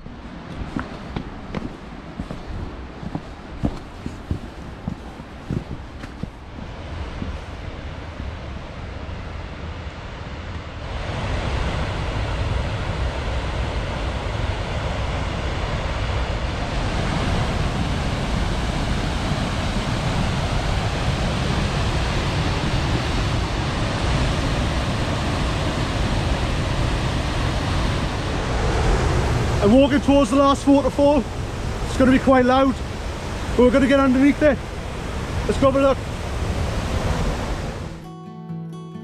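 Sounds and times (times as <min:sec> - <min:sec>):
waterfall rushing: 0:16.8 - 0:38.0.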